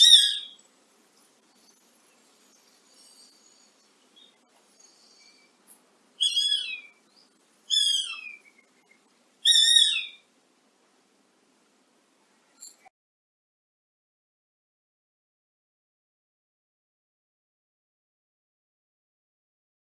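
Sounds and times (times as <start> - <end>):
faint bird chirps: 0.0 - 10.3.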